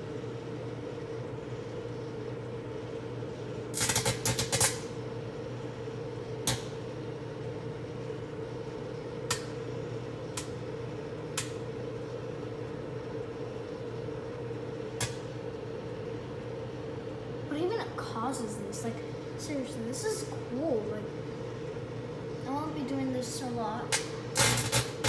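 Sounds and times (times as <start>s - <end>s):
microwave oven humming: 0.0s - 25.0s
electrical arcing snaps: 3.8s - 5.0s, 23.9s - 25.0s.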